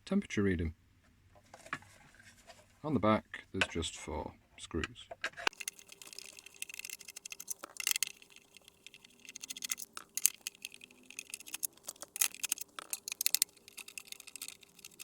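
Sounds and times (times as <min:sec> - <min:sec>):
screwdriver undoing screws: 0:05.5 - 0:15.0.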